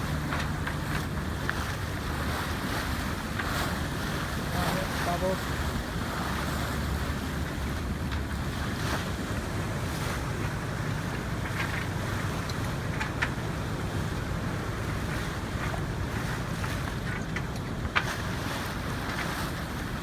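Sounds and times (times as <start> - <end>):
water rushing past hull: 0.0 - 20.0.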